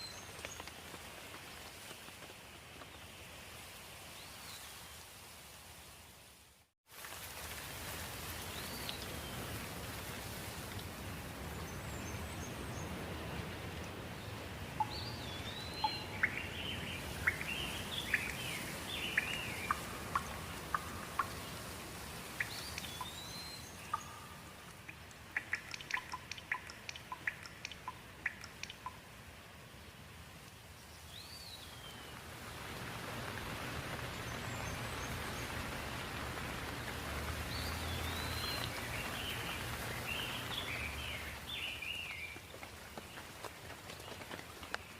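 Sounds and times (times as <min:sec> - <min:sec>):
light rain: 0:00.0 - 0:44.9
birds chirping and twittering: 0:14.8 - 0:29.0, 0:37.4 - 0:42.5.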